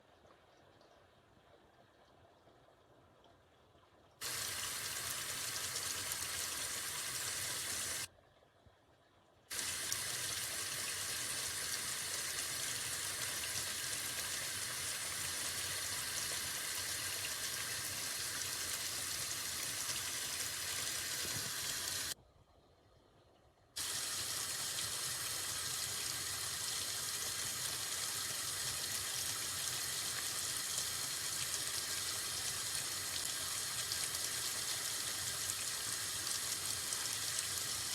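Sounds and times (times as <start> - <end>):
steady rushing hiss: 4.2 - 8.1, 9.5 - 22.2.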